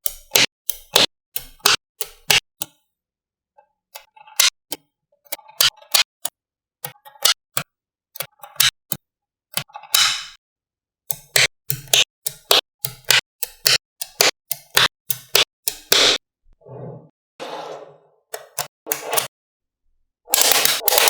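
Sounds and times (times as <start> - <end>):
magnetic balls clicking together: 11.1 - 16.2, 20.3 - 21.0.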